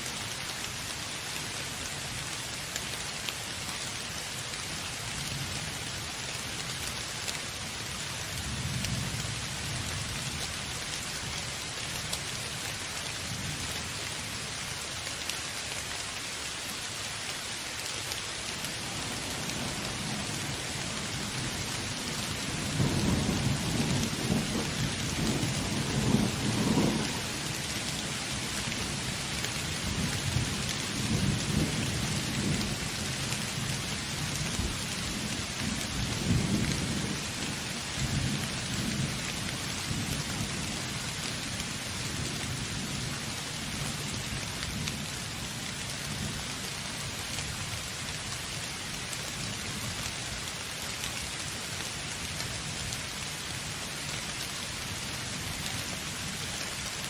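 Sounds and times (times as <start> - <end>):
heavy rain: 0.0 - 57.0
rolling thunder: 22.7 - 27.3.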